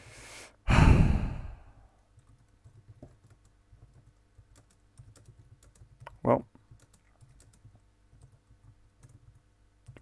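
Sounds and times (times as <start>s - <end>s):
computer keyboard clicks: 2.2s - 10.0s.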